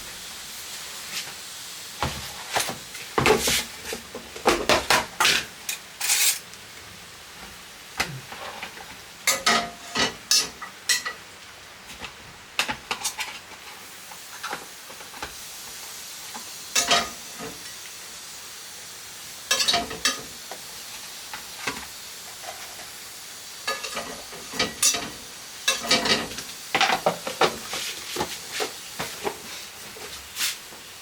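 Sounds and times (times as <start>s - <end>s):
steady hiss: 0.0s - 31.0s
metal utensil scraping a pot: 6.0s - 6.4s.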